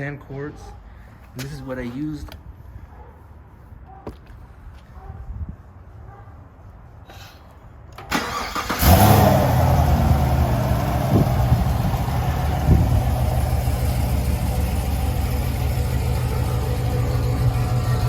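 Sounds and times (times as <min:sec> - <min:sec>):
car engine starting and idling: 0:08.0 - 0:18.0
engine throttle blips: 0:08.2 - 0:18.0.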